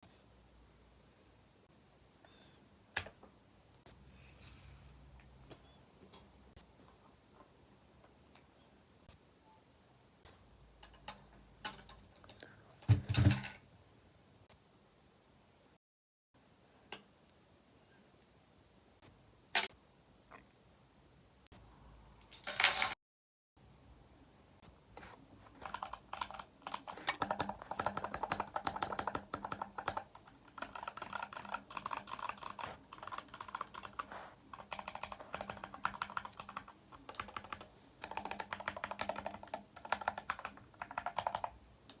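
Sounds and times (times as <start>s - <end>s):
mechanical keyboard typing: 25.5s - 42.0s.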